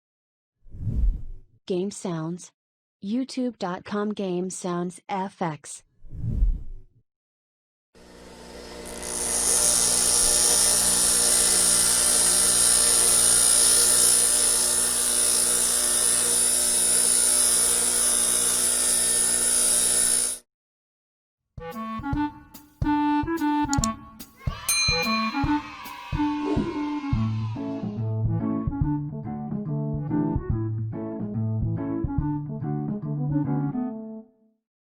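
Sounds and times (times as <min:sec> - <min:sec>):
metal grinder running: 0:08.0 - 0:20.4
instrumental music with steady beat: 0:21.6 - 0:27.0, 0:28.1 - 0:33.9.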